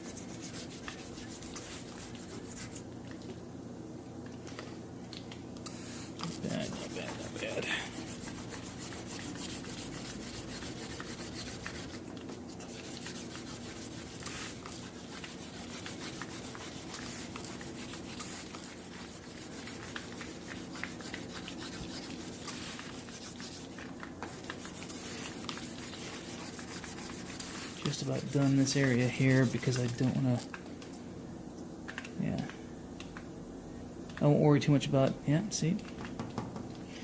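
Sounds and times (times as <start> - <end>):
wet sandpaper rasping on panel: 0.0 - 2.8, 6.5 - 12.0, 12.6 - 23.7, 24.3 - 30.2.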